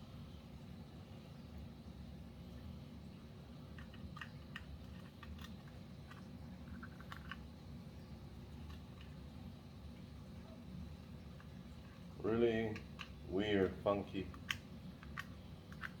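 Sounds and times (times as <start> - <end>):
plastic parts clicking: 14.3 - 16.0.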